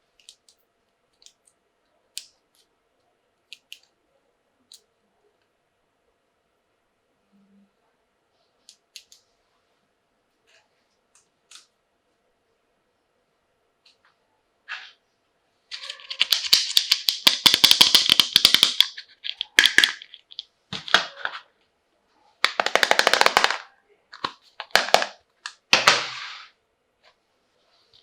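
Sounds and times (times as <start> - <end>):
packaging crackling: 15.7 - 21.3.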